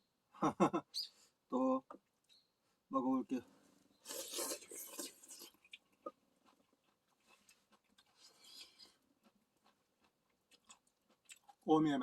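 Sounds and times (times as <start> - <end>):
person chewing noodles: 4.0 - 11.7.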